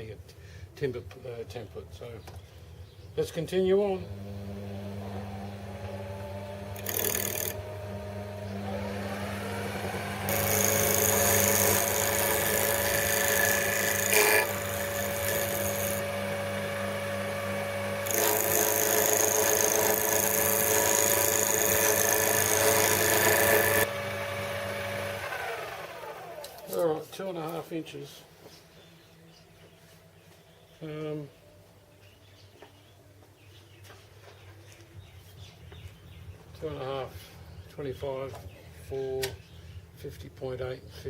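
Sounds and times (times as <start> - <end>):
wood-turning tool scraping: 4.1 - 25.8
lathe motor hum: 4.1 - 26.8.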